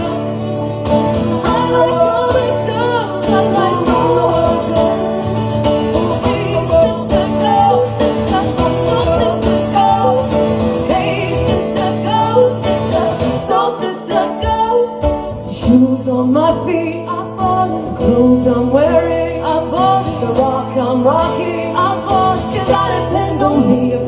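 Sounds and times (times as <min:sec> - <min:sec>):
guitar accompaniment: 0:00.0 - 0:24.0
women singing: 0:00.0 - 0:24.0.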